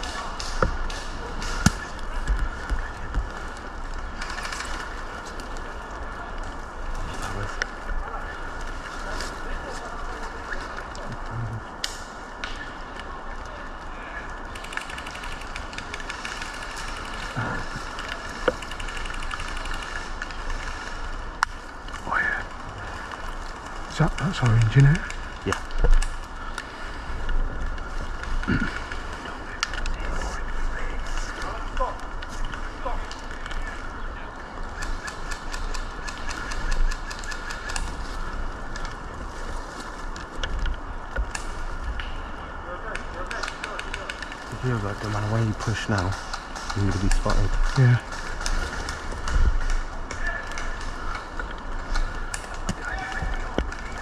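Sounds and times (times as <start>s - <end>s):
outdoor background noise: 0.0s - 54.0s
wind rumble on microphone: 46.8s - 50.1s.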